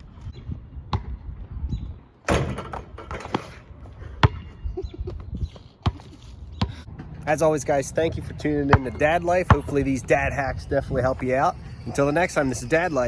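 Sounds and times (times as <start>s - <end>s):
basketball bouncing on hard ground: 0.7s - 1.6s, 2.3s - 4.6s, 5.5s - 7.2s, 8.6s - 10.4s.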